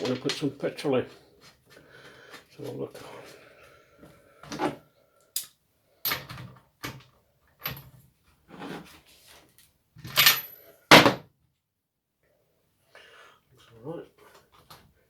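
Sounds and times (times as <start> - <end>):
tools clattering on a workbench: 0.0 - 0.6, 10.0 - 11.2.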